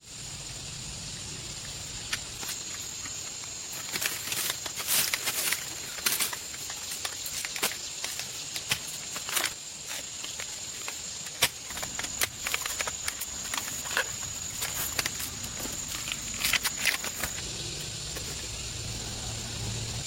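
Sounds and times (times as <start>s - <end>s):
steady high-pitched hiss: 0.0s - 20.0s
sharp clicks and crunches: 2.1s - 17.4s.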